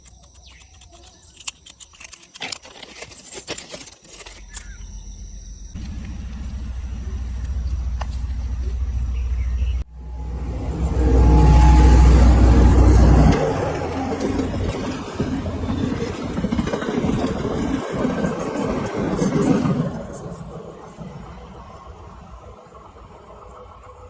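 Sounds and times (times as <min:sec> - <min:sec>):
train rumbling: 0:05.5 - 0:24.0.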